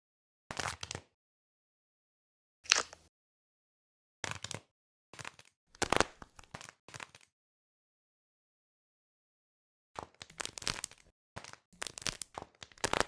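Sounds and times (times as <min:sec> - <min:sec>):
crinkling squishy toys: 0:04.3 - 0:07.3, 0:10.0 - 0:13.0.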